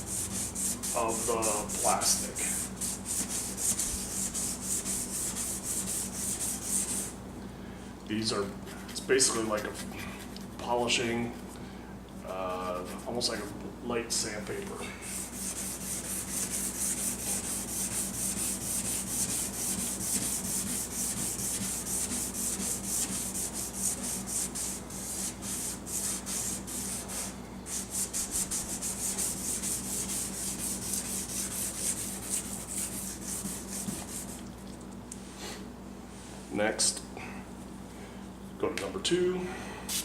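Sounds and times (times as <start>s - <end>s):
hand sanding plastic: 0.0s - 7.2s, 12.3s - 13.5s, 15.0s - 34.6s.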